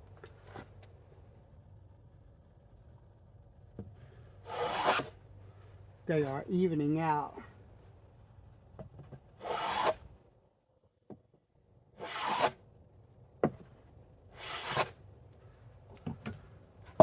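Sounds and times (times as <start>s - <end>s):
hand plane shaving wood: 4.5s - 5.1s, 9.4s - 10.0s, 12.0s - 12.6s, 14.4s - 14.9s.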